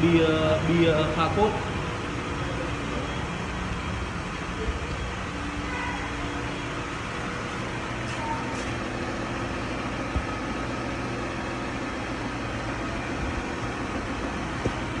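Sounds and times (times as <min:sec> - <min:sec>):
engine idling: 0:00.0 - 0:15.0.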